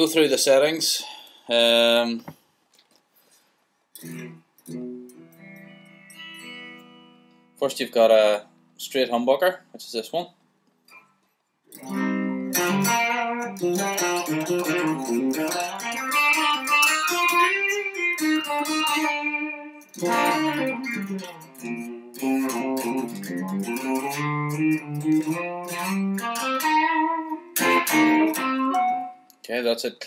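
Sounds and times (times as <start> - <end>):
clean electric guitar: 4.0 - 9.2, 11.7 - 29.4.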